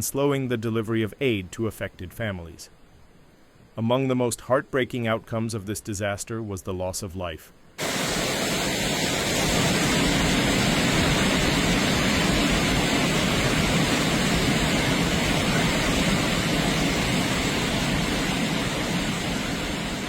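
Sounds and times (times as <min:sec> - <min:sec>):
floodwater rushing: 0:07.8 - 0:20.0.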